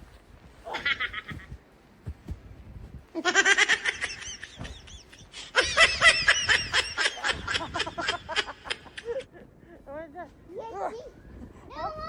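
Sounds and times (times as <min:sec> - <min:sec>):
young child giggling: 0:03.2 - 0:09.3.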